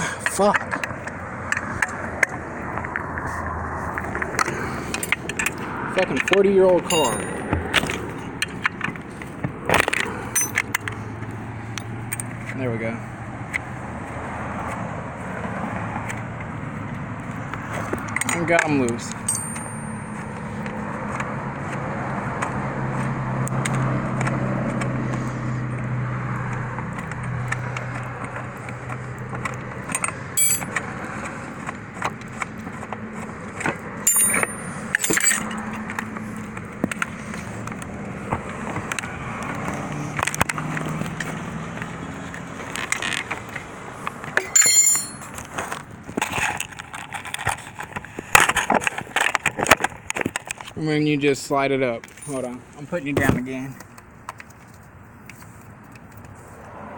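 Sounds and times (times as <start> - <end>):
metal tools clinking: 4.9 - 8.9, 9.9 - 10.8, 18.2 - 20.4, 29.8 - 30.8, 34.0 - 35.8, 44.3 - 45.5.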